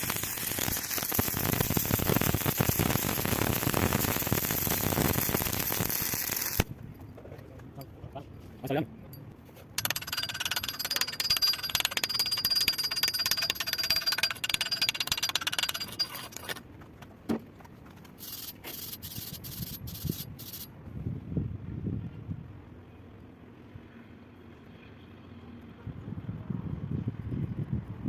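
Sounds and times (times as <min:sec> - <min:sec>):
welding arc crackling: 0:00.0 - 0:06.7.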